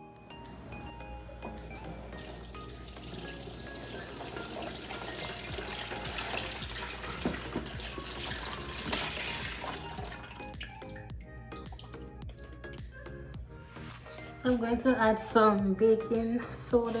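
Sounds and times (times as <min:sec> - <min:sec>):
water pouring into a basin: 0:02.2 - 0:10.9.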